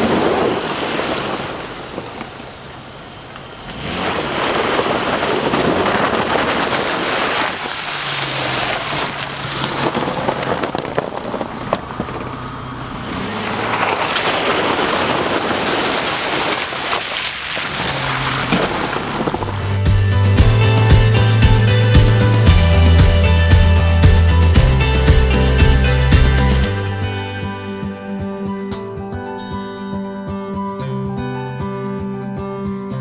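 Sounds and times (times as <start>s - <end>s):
water and mud splashing: 3.6s - 12.4s, 13.0s - 27.7s
low engine note: 19.4s - 28.1s.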